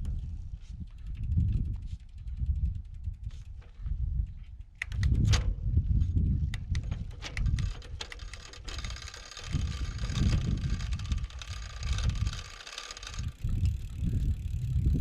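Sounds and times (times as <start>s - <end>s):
wind gusting on microphone: 0.0s - 15.0s
light clicks and ticks: 6.4s - 13.8s.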